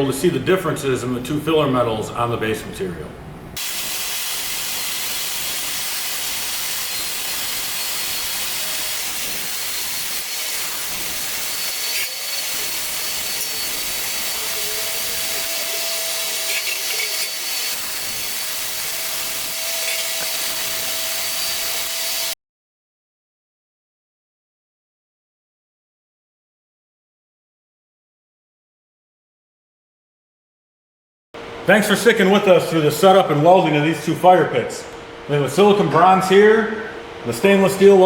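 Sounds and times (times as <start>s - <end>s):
laser welder hiss: 3.6s - 22.4s.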